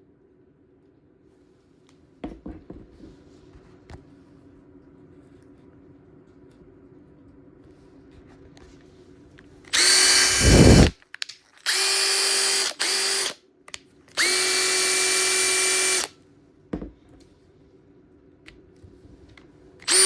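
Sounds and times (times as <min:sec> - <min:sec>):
impact driver motor whine: 0:09.7 - 0:11.0, 0:11.7 - 0:13.4, 0:14.1 - 0:16.1.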